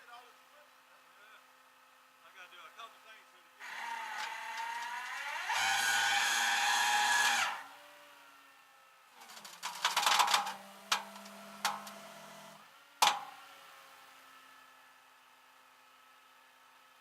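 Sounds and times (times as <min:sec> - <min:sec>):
small motor whining: 0:03.6 - 0:08.6, 0:10.4 - 0:12.8
rattle: 0:09.2 - 0:12.0.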